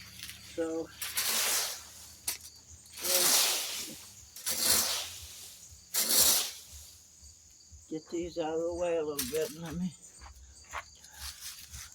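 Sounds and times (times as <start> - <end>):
rake scraping through dry leaves: 0.0 - 7.3, 9.2 - 9.7, 11.2 - 11.9.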